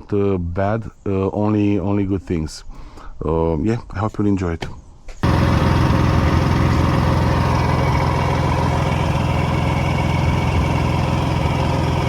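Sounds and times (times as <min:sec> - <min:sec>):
generator engine droning: 0:05.2 - 0:12.0.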